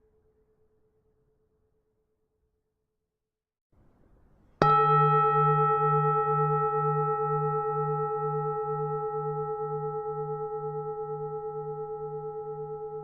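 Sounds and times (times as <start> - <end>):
bell struck and ringing: 4.6 - 13.0.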